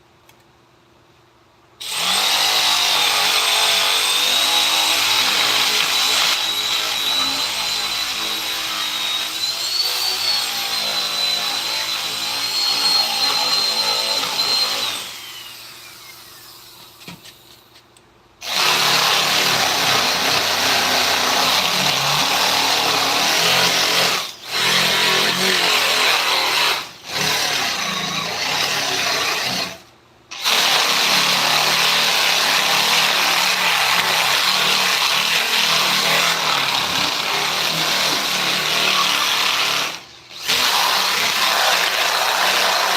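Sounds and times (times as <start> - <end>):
power tool whining on wood: 1.8 - 17.5, 30.4 - 42.9.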